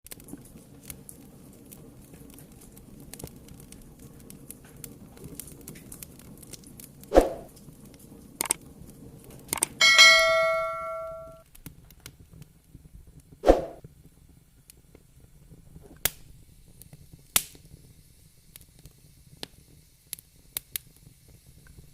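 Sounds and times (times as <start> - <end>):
fire crackling and popping: 0.0 - 9.8, 11.4 - 21.9
bell-like metallic ring: 9.8 - 11.4.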